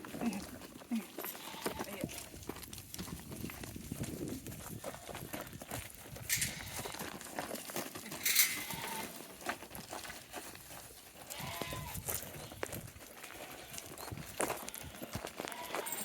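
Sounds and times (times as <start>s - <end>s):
goats bleating: 0.1s - 2.2s, 6.4s - 7.2s, 8.1s - 9.3s, 11.3s - 12.0s, 13.2s - 14.0s, 14.6s - 16.0s.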